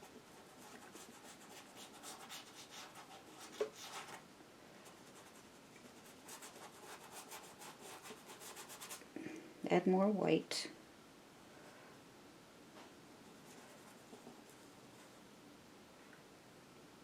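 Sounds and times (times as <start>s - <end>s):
scratchy paintbrush strokes: 0.0s - 4.2s, 4.8s - 9.0s.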